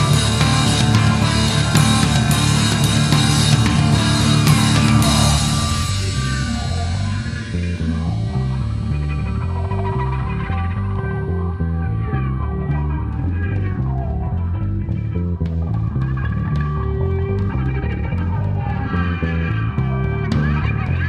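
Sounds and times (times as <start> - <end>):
cymbal crashes: 0.0 - 10.4
progressive rock band playing: 0.0 - 19.0
stepping bass line: 0.0 - 21.0.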